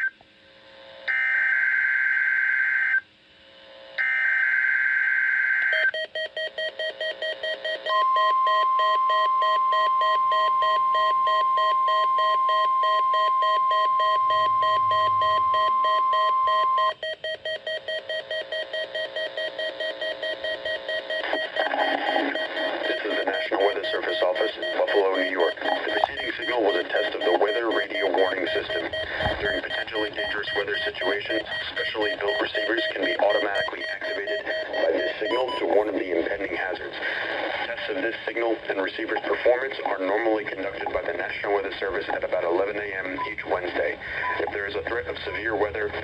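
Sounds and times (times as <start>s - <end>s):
steady warning alarm tone: 4.0s - 36.0s
screechy digital header tones: 13.3s - 17.0s, 21.0s - 35.9s.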